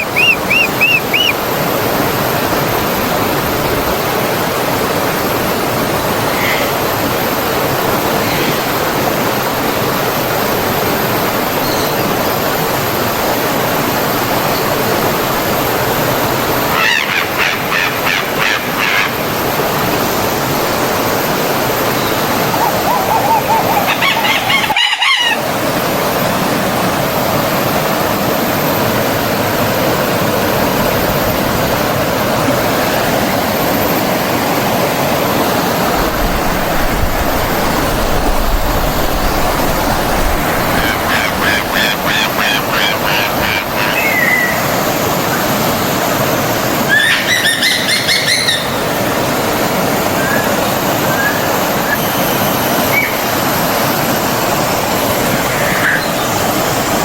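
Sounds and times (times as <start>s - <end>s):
bird calls: 0.0s - 1.4s, 21.8s - 25.4s, 36.2s - 45.5s, 46.8s - 49.1s, 50.1s - 53.4s, 55.4s - 56.5s
stream rushing: 0.0s - 57.0s.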